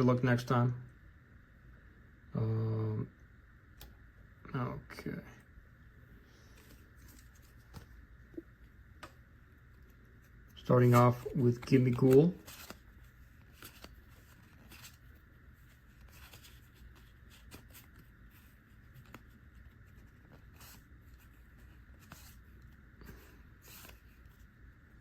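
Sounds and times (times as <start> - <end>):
trading cards flipping: 6.4 - 8.4, 9.0 - 24.5.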